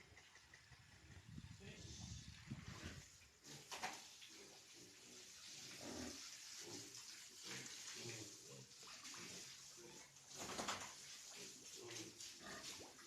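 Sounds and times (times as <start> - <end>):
pigs grunting: 4.8 - 10.2, 11.4 - 13.0.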